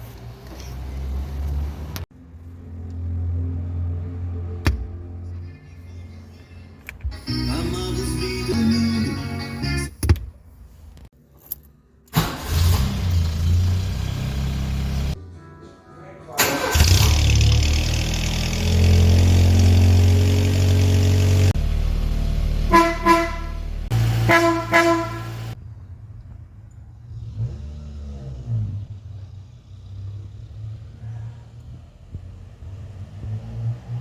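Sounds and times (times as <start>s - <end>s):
car engine running: 16.8s - 25.6s
car horn toots: 22.6s - 25.6s.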